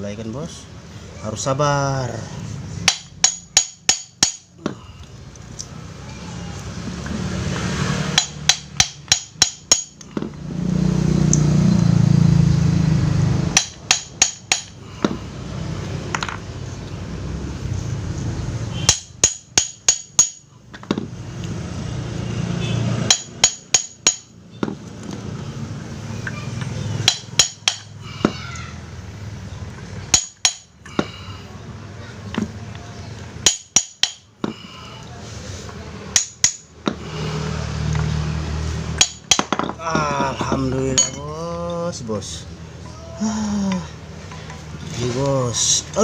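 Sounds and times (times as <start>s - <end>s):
hammer tapping on metal pulley: 2.9s - 4.5s, 8.1s - 10.3s, 13.6s - 15.2s, 18.8s - 20.4s, 23.1s - 24.3s, 27.1s - 28.0s, 30.1s - 31.1s, 33.4s - 34.3s, 36.2s - 37.0s, 39.0s - 39.8s.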